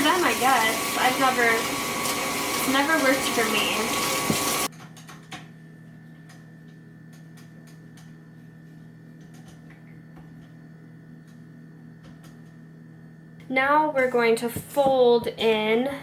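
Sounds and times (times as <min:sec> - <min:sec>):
kitchen tap water running: 0:00.0 - 0:04.7
steady low hum: 0:04.7 - 0:16.0.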